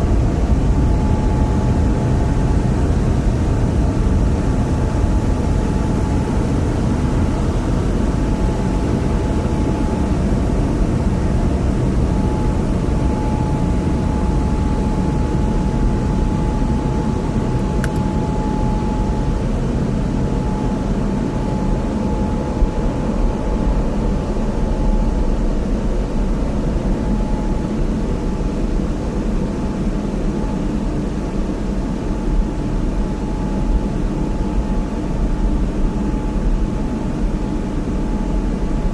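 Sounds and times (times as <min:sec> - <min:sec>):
thin steady whine: 0:00.0 - 0:38.9
short click: 0:17.6 - 0:18.2.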